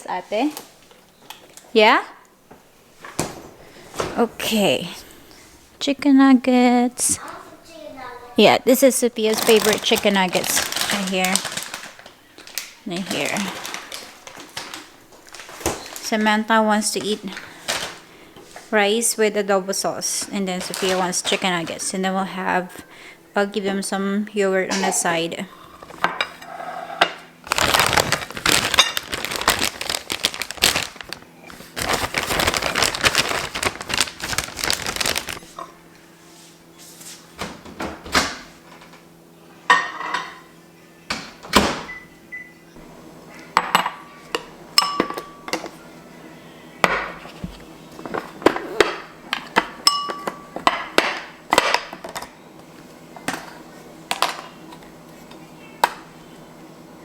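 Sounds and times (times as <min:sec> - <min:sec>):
dishes and cutlery clinking: 0:25.7 - 0:27.3, 0:39.7 - 0:40.4, 0:43.6 - 0:45.8, 0:48.1 - 0:52.4.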